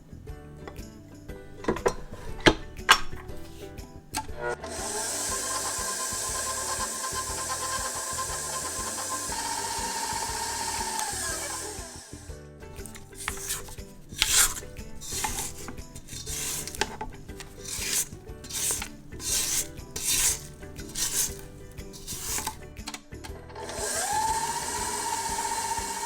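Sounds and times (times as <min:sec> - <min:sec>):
scraping mixing bowl: 0:01.5 - 0:22.8
electric mixer running: 0:04.2 - 0:12.3, 0:13.2 - 0:22.7, 0:23.6 - 0:26.0.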